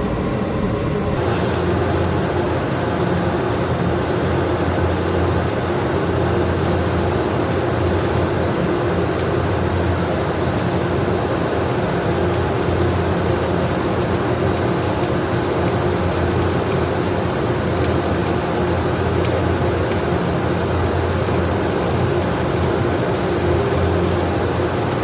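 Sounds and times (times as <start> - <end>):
low hum: 0.0 - 2.2
welding arc crackling: 0.0 - 25.0.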